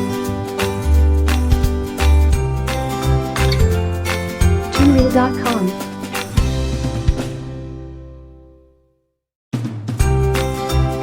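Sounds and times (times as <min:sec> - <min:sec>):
background music: 0:04.6 - 0:05.9.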